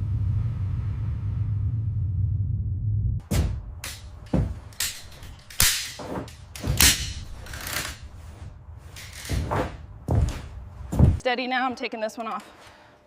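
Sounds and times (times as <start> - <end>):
knocks and clacks of tools: 3.3 - 8.2, 8.9 - 11.2.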